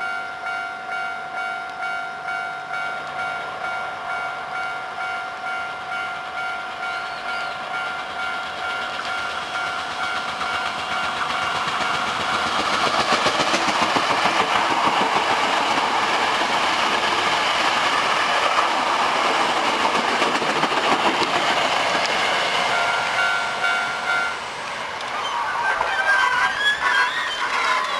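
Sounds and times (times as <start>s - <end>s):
two-tone level-crossing bell: 0.0s - 8.4s
train wheels clattering over rail joints: 5.9s - 27.9s.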